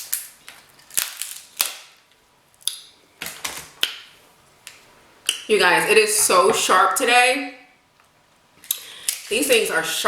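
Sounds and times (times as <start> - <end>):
crab shells cracking: 0.0 - 4.1.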